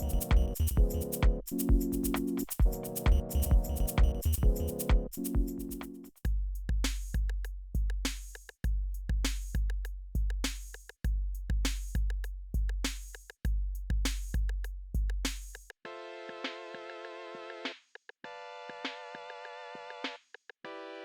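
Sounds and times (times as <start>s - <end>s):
drum machine beat: 0.0s - 15.7s.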